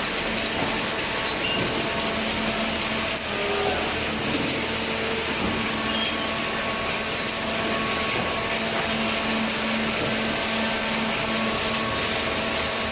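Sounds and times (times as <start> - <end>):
baler machinery droning: 0.0 - 12.9.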